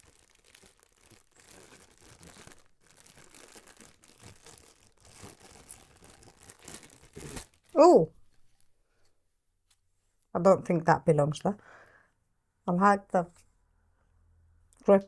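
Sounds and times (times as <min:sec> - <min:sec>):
packaging rustling and crinkling: 0:00.0 - 0:07.8.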